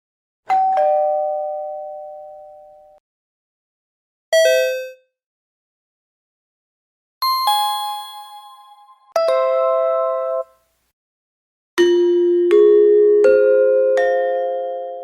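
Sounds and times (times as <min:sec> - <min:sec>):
two-note doorbell chime: 0:07.2 - 0:10.5, 0:11.8 - 0:15.0.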